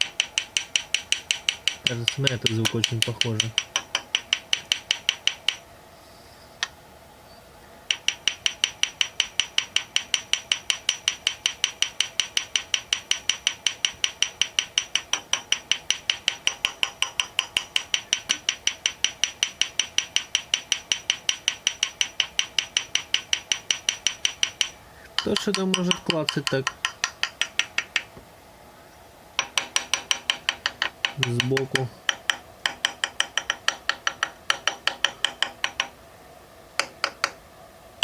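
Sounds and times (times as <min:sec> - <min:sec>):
sharp metallic taps: 0:00.0 - 0:05.6, 0:07.9 - 0:28.2, 0:29.4 - 0:36.0, 0:36.8 - 0:37.4.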